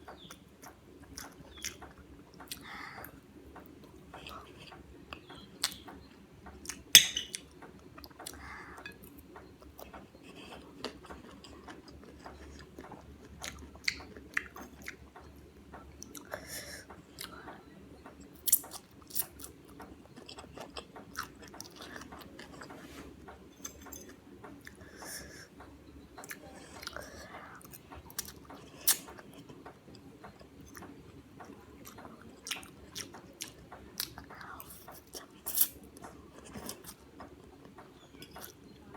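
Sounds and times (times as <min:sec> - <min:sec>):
chewing and mouth sounds: 0:00.2 - 0:05.8, 0:06.5 - 0:17.6, 0:18.3 - 0:25.5, 0:26.2 - 0:38.7
sharp mouth clicks and smacks: 0:27.7 - 0:37.4.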